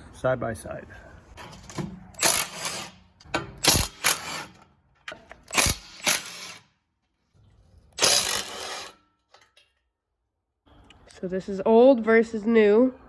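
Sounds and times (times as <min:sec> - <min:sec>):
ratchet wrench clicking: 0:03.6 - 0:04.4, 0:05.5 - 0:06.6, 0:08.0 - 0:09.0.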